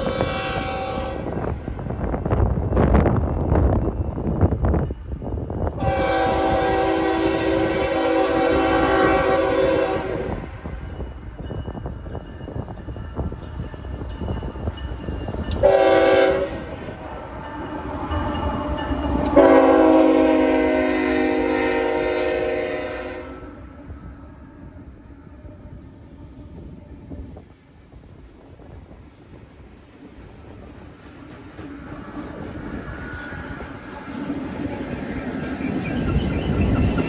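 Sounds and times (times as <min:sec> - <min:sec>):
locomotive air horn blasts: 0:00.0 - 0:01.5, 0:05.8 - 0:10.6, 0:15.6 - 0:17.0, 0:19.2 - 0:23.6
train rumble and clatter: 0:00.0 - 0:37.0.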